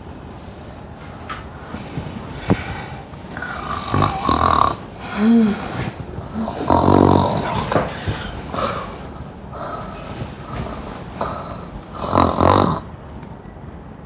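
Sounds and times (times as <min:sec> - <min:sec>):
person snoring loudly: 0:03.4 - 0:12.9.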